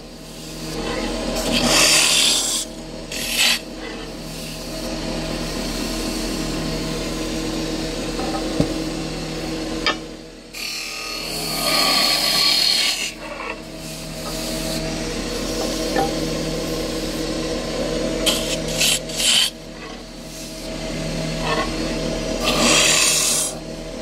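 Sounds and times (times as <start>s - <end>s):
wood lathe motor hum: 0.0s - 24.0s
tool scraping spinning wood: 0.5s - 4.9s, 10.6s - 16.1s, 18.2s - 20.5s, 21.3s - 23.6s.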